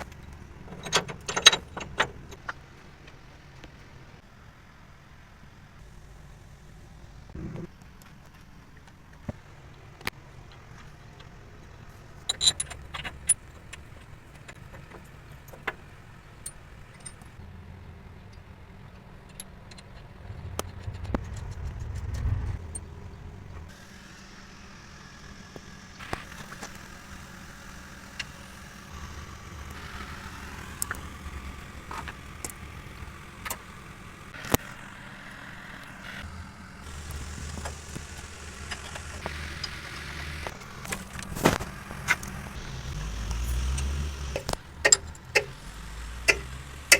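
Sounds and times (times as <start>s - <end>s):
low engine hum: 0.0s - 46.9s
metal clinks and knocks: 0.1s - 2.6s.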